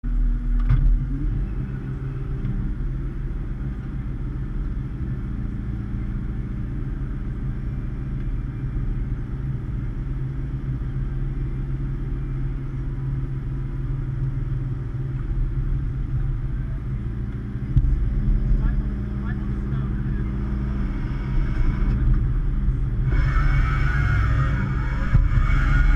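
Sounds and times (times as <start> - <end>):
excavator diesel engine running: 0.1 - 25.9
hydraulic auger: 23.0 - 25.9.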